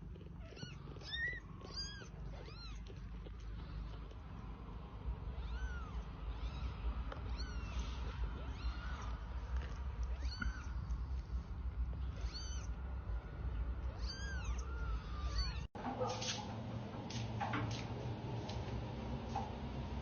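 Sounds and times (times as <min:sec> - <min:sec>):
kitten mewing: 0:00.0 - 0:04.1, 0:05.3 - 0:11.3, 0:12.0 - 0:12.8, 0:13.9 - 0:15.7.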